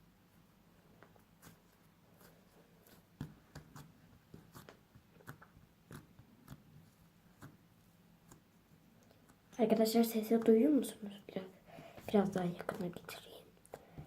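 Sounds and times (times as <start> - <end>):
slime squelching: 0.8 - 10.6.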